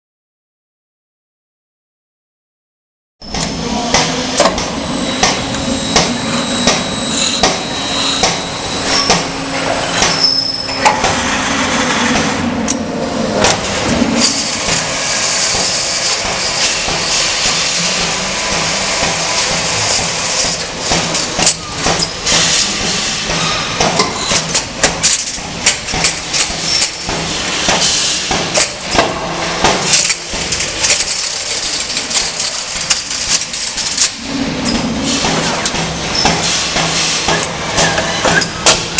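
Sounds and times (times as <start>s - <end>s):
motor hum with high whine: 3.2s - 38.9s
metallic clicks and clanks: 19.9s - 38.9s.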